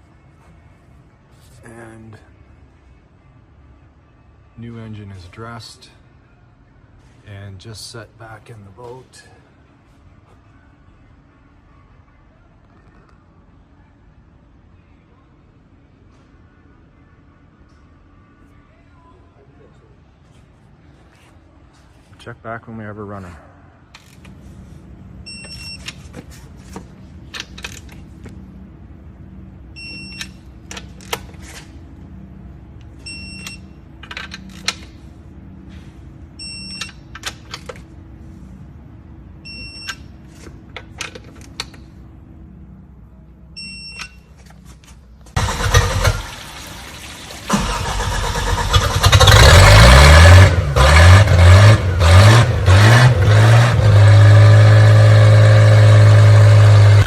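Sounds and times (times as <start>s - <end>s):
boat engine cranking and running: 45.4s - 46.4s.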